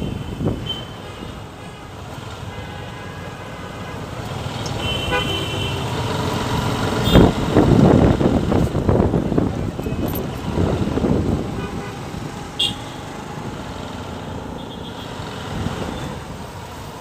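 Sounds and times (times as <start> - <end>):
car horns honking: 0.0 - 6.1, 7.0 - 7.7, 9.8 - 13.4, 14.4 - 15.2
road traffic: 0.0 - 17.0.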